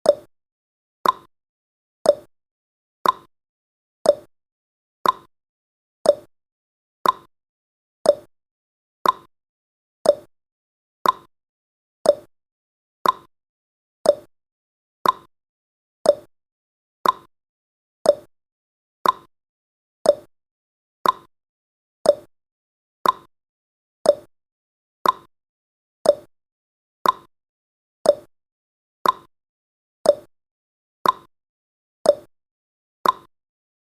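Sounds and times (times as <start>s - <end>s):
clock ticking: 1.0s - 1.3s, 3.0s - 3.3s, 5.0s - 5.3s, 6.1s - 6.3s, 7.0s - 7.3s, 8.1s - 8.3s, 9.0s - 9.3s, 10.0s - 10.3s, 11.0s - 11.3s, 12.1s - 12.3s, 13.0s - 13.3s, 14.1s - 14.3s, 15.0s - 15.3s, 16.1s - 16.3s, 17.0s - 17.3s, 18.1s - 18.3s, 19.0s - 19.3s, 20.1s - 20.3s, 21.0s - 21.3s, 22.1s - 22.3s, 23.0s - 23.3s, 24.1s - 24.3s, 25.0s - 25.3s, 26.0s - 26.3s, 27.0s - 27.3s, 28.1s - 28.3s, 29.0s - 29.3s, 30.1s - 30.3s, 31.0s - 31.3s, 32.1s - 32.3s, 33.0s - 33.3s.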